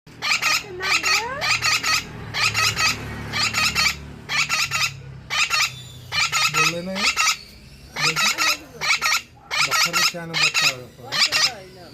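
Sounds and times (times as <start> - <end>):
parrot harsh chattering calls: 0.1 - 11.9.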